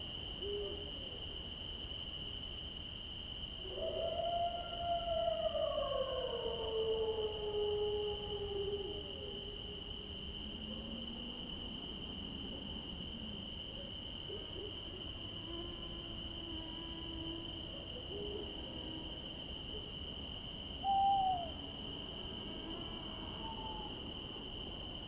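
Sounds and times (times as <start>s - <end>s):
low gliding bird calls: 20.8s - 21.6s.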